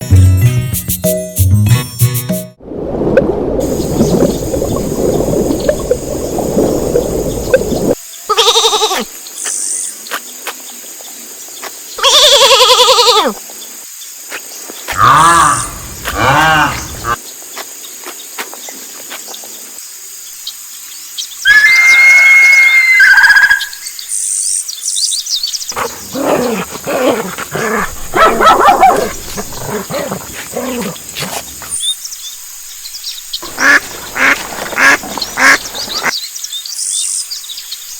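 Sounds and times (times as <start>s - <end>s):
music: 0.0s - 2.6s
animal calls: 14.9s - 17.2s, 21.5s - 23.8s, 25.7s - 31.9s.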